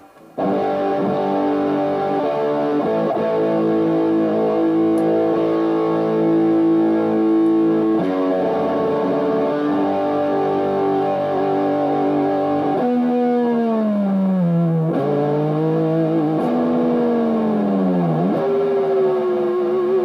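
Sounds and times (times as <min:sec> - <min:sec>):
distorted electric guitar chords: 0:00.0 - 0:20.0.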